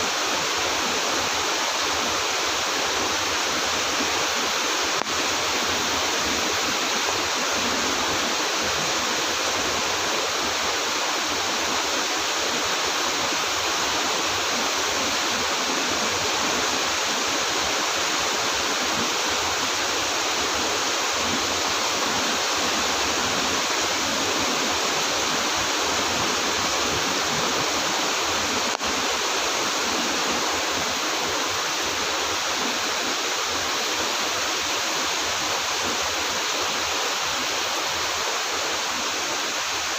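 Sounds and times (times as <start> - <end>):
heavy rain falling: 0.0 - 39.9.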